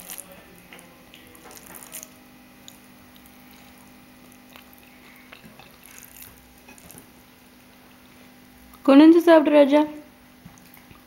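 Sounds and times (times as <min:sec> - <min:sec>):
steady low hum: 0:00.0 - 0:11.0
child eating mouth sounds: 0:01.4 - 0:07.1.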